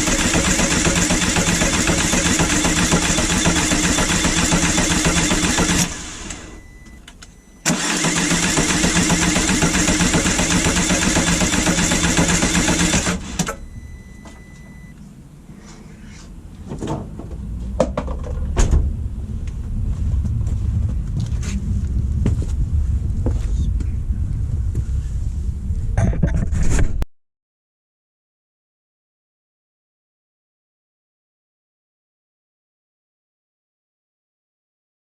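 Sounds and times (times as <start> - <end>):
loud motor running: 0.0 - 6.8, 7.7 - 13.6
low rumble: 13.6 - 27.0.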